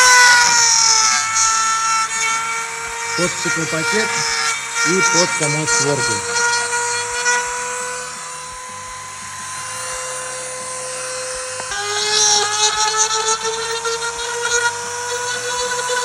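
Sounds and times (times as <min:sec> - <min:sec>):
rotary tool whining: 0:00.0 - 0:16.0.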